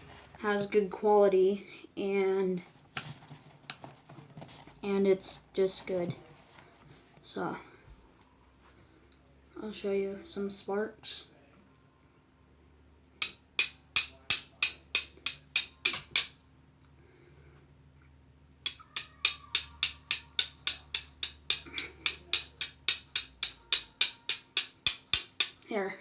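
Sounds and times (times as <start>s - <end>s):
flint and steel striking: 13.2s - 16.4s, 18.6s - 25.6s.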